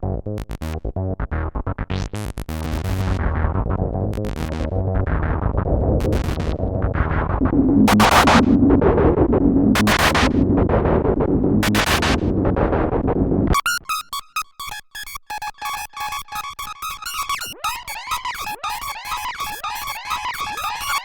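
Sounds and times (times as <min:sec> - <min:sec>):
bass-heavy synth sound: 0:00.0 - 0:13.6
fast sequenced synth notes: 0:04.2 - 0:14.1, 0:15.0 - 0:21.0.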